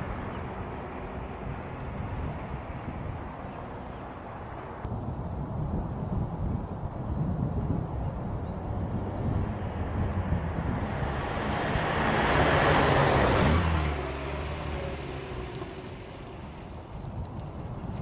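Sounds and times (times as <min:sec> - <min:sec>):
car driving past: 0:08.8 - 0:16.9.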